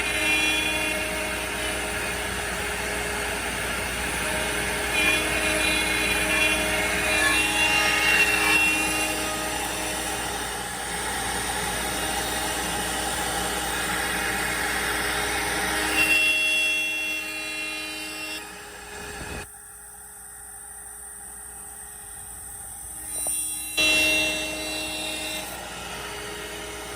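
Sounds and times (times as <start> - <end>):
rough wood cutting noise: 0.0 - 19.4
router spindle whine: 0.0 - 26.9.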